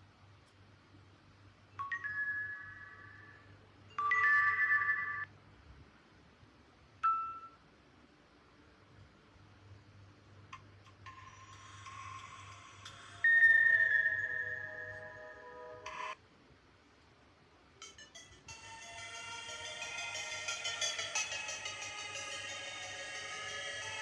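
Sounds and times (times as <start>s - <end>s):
electronic chime ringtone: 1.8s - 5.3s, 11.1s - 16.2s, 17.8s - 24.0s
faint tone: 11.9s - 16.2s.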